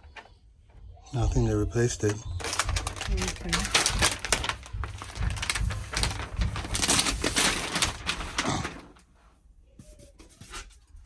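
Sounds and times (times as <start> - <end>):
packaging rustling and scraping: 2.0 - 9.2.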